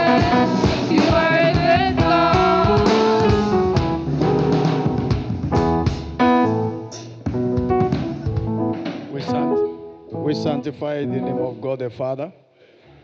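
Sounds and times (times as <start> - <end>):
light drums: 0.0 - 9.7
keyboard-led instrumental music: 0.0 - 12.0.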